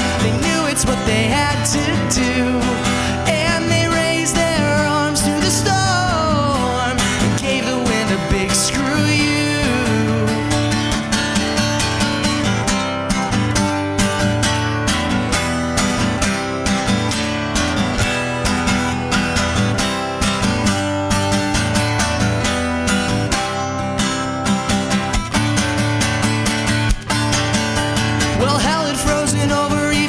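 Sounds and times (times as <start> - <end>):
instrumental rock music: 0.0 - 30.0.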